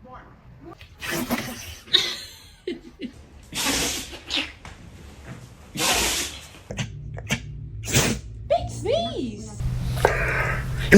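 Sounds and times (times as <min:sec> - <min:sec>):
puppy sneezing: 0:03.5 - 0:04.6, 0:05.7 - 0:06.9.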